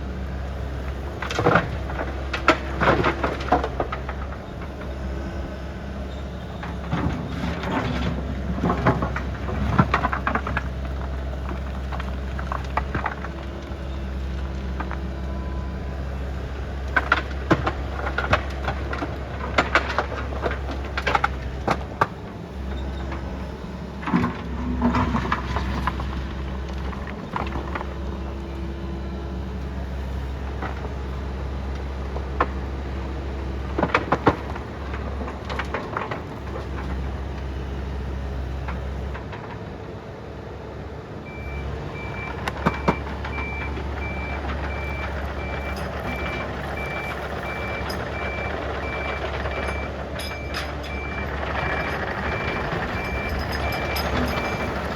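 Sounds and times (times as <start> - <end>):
heavy machine engine droning: 0.0 - 54.9
reversing alarm beeping: 41.3 - 54.9
metal clanks: 49.6 - 54.9.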